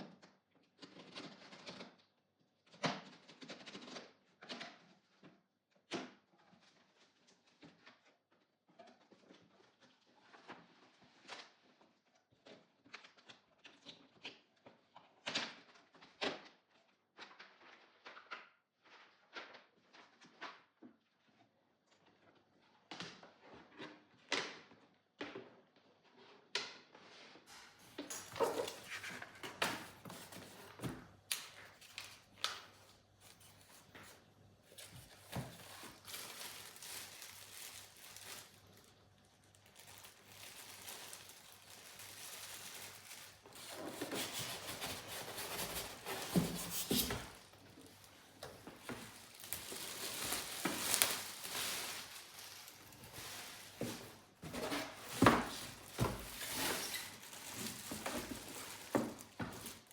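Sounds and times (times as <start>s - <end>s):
rustling: 27.9s - 59.9s.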